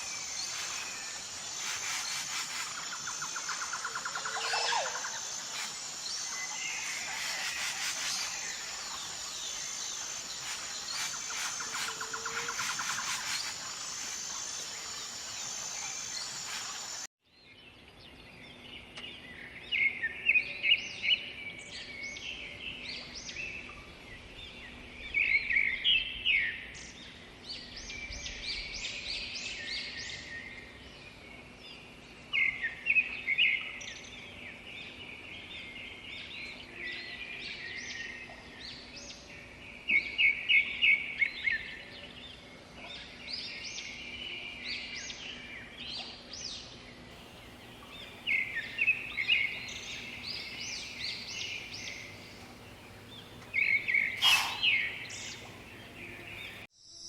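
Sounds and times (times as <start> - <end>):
birds chirping and calling: 0.0 - 17.1, 47.2 - 56.7
soft background hiss: 0.0 - 17.1, 47.2 - 56.7.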